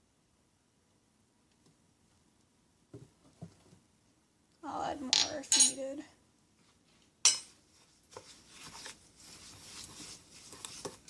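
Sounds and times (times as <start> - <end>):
spoon stirring oily mixture: 8.0 - 11.0.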